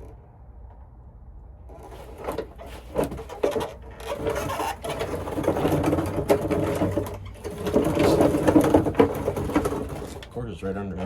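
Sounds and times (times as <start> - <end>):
hand tools and metal clinking: 1.7 - 10.4.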